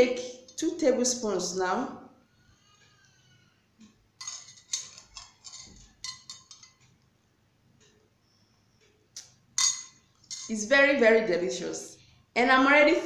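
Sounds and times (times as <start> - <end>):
metal spoon clinking glass cup: 4.2 - 6.8, 9.6 - 10.6.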